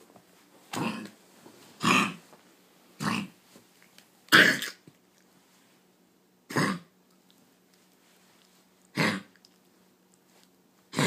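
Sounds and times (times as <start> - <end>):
pet coughing: 4.3 - 4.8, 6.5 - 6.9, 8.9 - 9.3.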